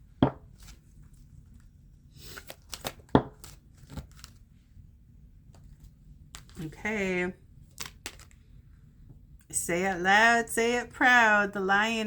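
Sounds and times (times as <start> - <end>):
cards rustling: 0.5 - 4.5, 5.5 - 6.7, 7.7 - 8.5.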